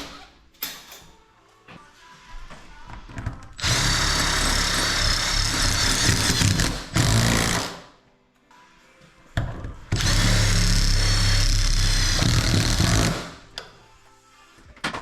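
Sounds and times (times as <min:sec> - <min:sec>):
power drill running: 0:03.6 - 0:07.8, 0:10.0 - 0:13.4.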